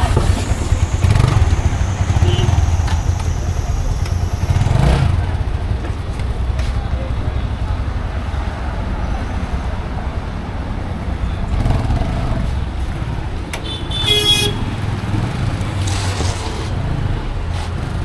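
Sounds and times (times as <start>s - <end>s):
vehicle horn honk: 0.0s - 5.8s, 13.6s - 15.0s
road traffic rumble: 0.0s - 18.0s.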